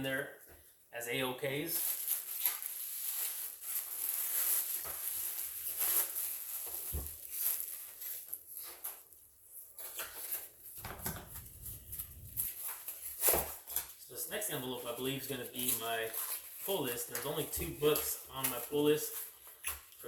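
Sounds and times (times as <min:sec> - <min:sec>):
paper and plastic rustling: 0:01.8 - 0:20.0
low rumbling: 0:10.8 - 0:12.5.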